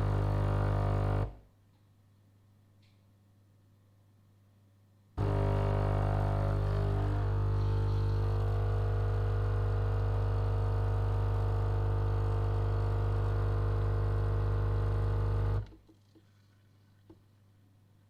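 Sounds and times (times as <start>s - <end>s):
coffee machine pump humming: 0.0s - 1.3s, 5.2s - 17.2s.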